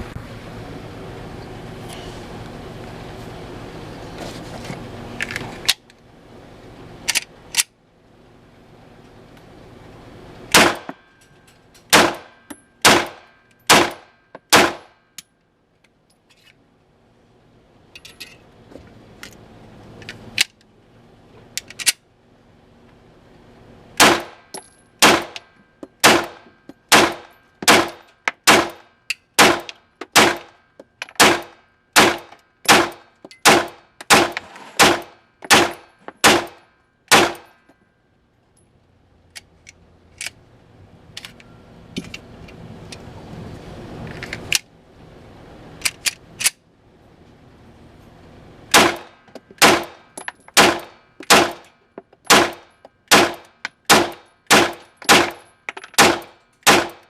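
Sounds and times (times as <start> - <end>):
pistol firing single shots: 10.5 - 10.9, 11.9 - 14.9, 24.0 - 24.4, 26.0 - 28.8, 31.2 - 37.4, 52.3 - 55.4, 56.0 - 57.0.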